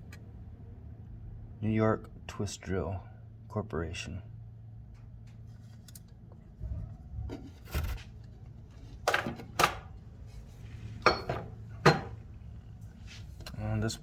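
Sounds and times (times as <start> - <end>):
low steady hum: 0.0 - 14.0
tools thumping on hard surface: 11.0 - 12.2.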